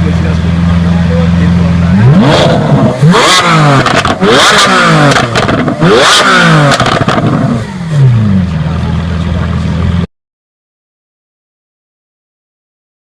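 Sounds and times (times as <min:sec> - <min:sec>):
car engine revving: 0:00.0 - 0:10.0
car engine idling: 0:00.0 - 0:10.1
exhaust crackles: 0:01.4 - 0:08.9.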